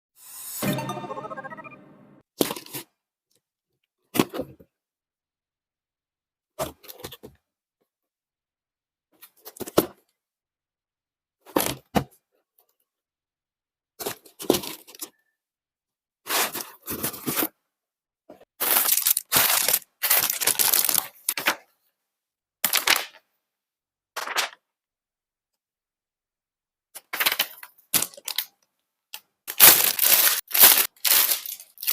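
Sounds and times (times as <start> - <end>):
plastic parts handling noise: 18.6 - 21.7, 29.1 - 31.9.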